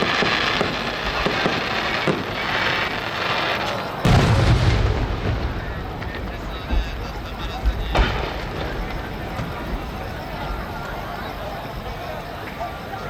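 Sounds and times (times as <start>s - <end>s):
fireworks popping and crackling: 0.0s - 13.0s
heavy fireworks boom: 0.0s - 13.0s.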